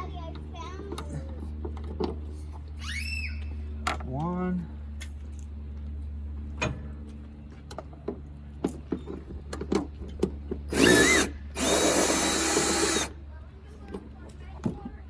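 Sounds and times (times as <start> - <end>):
power drill whining: 10.7 - 13.1.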